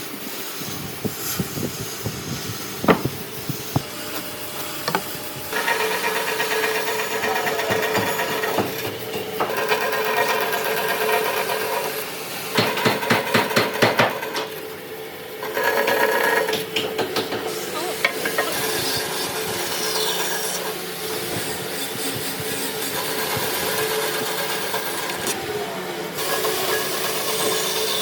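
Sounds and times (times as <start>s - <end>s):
steady hum: 0.0s - 9.4s
tool scraping on wood: 0.6s - 14.6s, 15.4s - 25.4s
sharp knocks: 2.8s - 3.9s.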